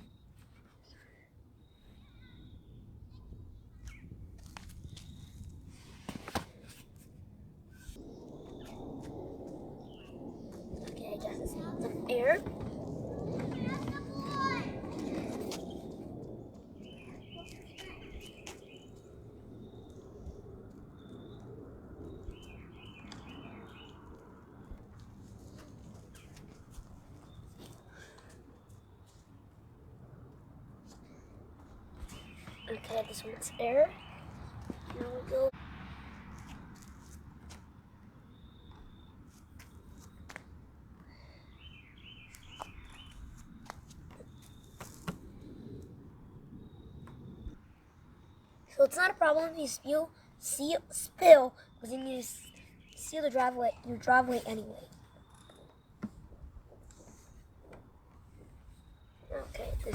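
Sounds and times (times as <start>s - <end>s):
small birds chirping: 0.0s - 4.2s, 9.8s - 15.8s, 16.4s - 24.2s, 31.0s - 35.5s, 41.0s - 45.8s, 46.6s - 57.8s.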